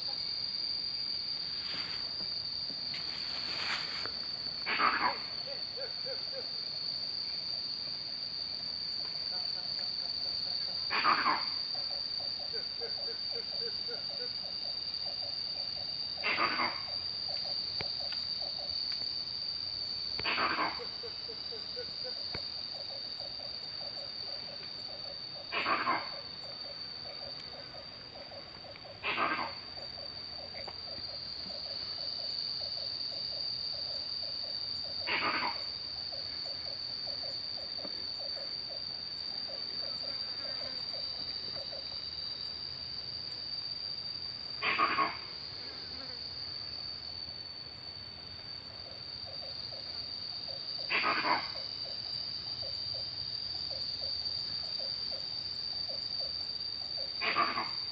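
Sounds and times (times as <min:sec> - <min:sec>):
high insect drone: 0:00.0 - 0:57.9
monkey calling loudly: 0:04.6 - 0:06.5, 0:16.2 - 0:16.8, 0:20.2 - 0:22.2, 0:25.5 - 0:26.3, 0:29.0 - 0:29.6, 0:35.1 - 0:35.7, 0:44.6 - 0:45.2, 0:50.9 - 0:51.6, 0:57.2 - 0:57.8.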